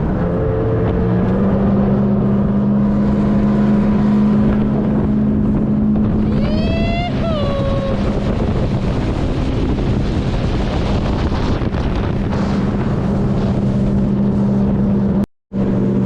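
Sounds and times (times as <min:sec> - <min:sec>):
boat motor running: 0:00.0 - 0:16.0
water rushing: 0:00.0 - 0:16.0
wind buffeting microphone: 0:00.0 - 0:16.0.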